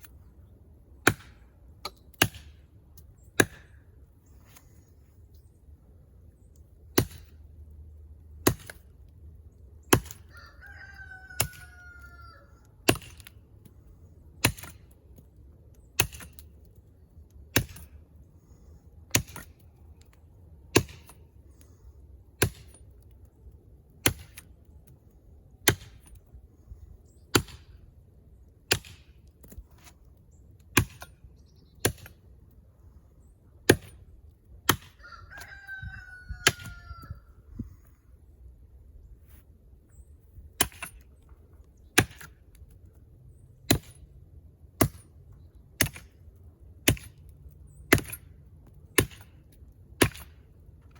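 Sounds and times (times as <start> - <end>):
rooster crowing: 10.3 - 12.7, 35.0 - 37.4
blade chopping into tree: 42.0 - 42.4, 47.9 - 48.3, 50.0 - 50.4.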